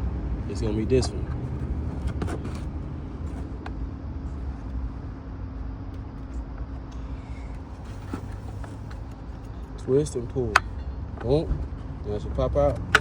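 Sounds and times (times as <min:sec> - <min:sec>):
constant hum: 0:00.0 - 0:13.0
low mechanical rumble: 0:00.0 - 0:13.0.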